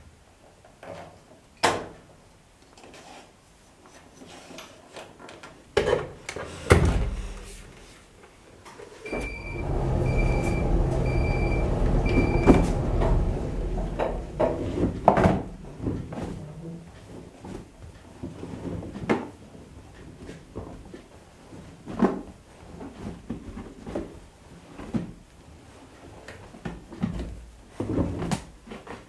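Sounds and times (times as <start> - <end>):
short high beeps: 9.1 - 12.7
washing machine clicks and knocks: 9.1 - 16.1
washing machine running: 9.1 - 16.6.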